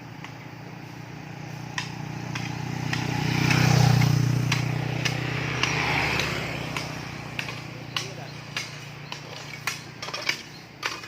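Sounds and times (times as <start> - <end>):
vehicle engine passing by: 0.0 - 11.0
sharp tool knocks: 4.0 - 11.0.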